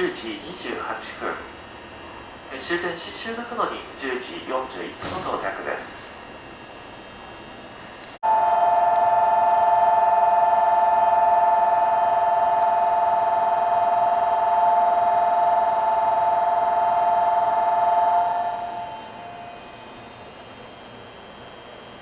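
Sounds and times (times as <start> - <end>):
two-tone electronic buzzer: 8.2 - 19.1.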